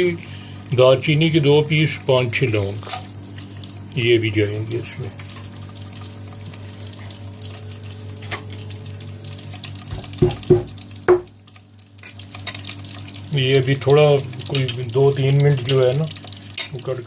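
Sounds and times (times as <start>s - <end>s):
spices sizzling in hot oil: 0.0s - 17.0s
sharp knocks: 9.9s - 11.3s.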